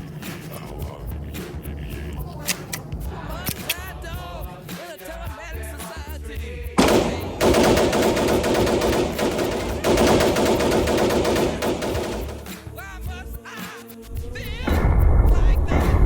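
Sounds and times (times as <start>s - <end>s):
rapid gunfire: 6.8s - 12.8s.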